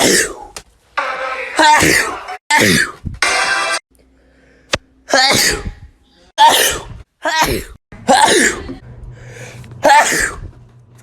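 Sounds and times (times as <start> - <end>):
person sneezing: 5.1 - 5.8, 6.4 - 8.8, 9.8 - 10.5.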